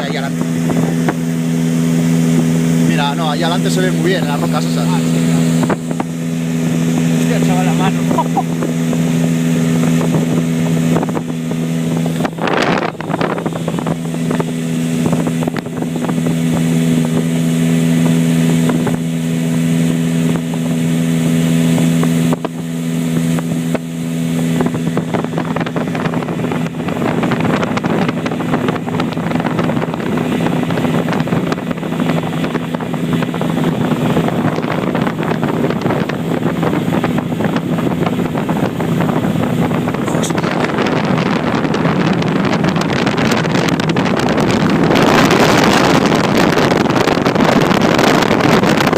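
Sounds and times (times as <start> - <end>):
motorboat engine droning: 0.0 - 48.9
wind buffeting microphone: 0.0 - 48.9.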